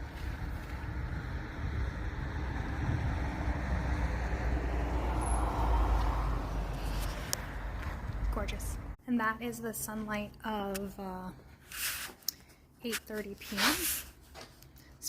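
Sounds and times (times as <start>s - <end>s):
vehicle passing by: 0.0s - 9.0s.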